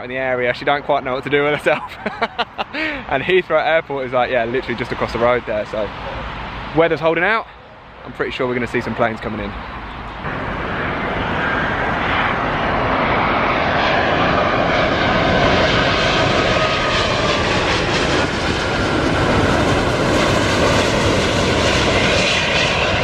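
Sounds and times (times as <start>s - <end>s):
jet airliner flying overhead: 0.0s - 23.0s
jet engine whine: 0.4s - 23.0s.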